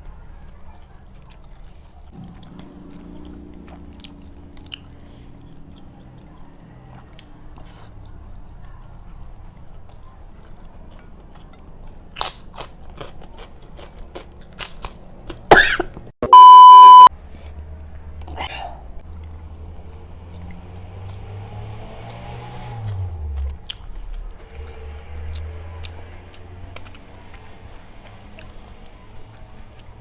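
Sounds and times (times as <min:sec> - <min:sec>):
quiet chewing: 0:00.0 - 0:16.1, 0:16.8 - 0:21.4, 0:22.9 - 0:30.0
electronic beep: 0:16.2 - 0:17.1.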